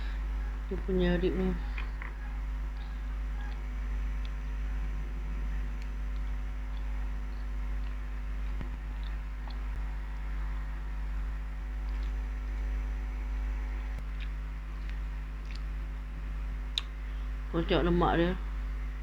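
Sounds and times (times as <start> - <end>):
faint chewing: 0.0 - 9.8, 11.8 - 12.3, 13.9 - 15.8
low hum: 0.0 - 19.0.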